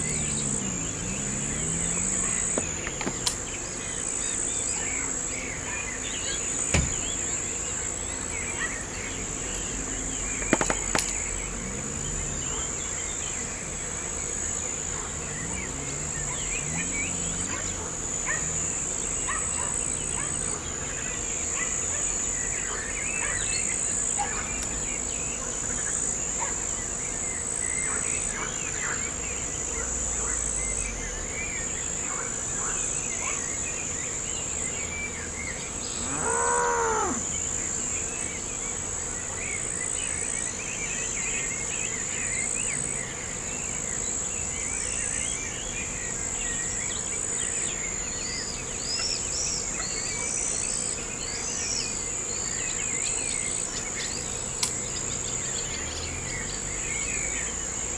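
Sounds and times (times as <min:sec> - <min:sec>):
small birds chirping: 0:00.0 - 0:25.8, 0:26.4 - 0:57.9
crickets trilling: 0:00.0 - 0:57.9
cow mooing: 0:35.9 - 0:37.4.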